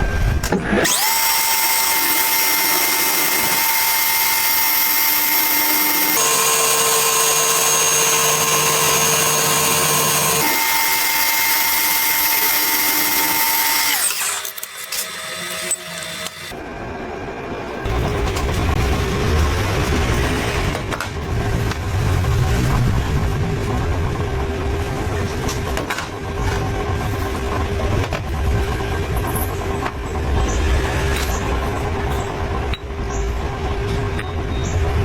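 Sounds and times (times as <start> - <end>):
power tool motor whining: 0.7 - 16.6.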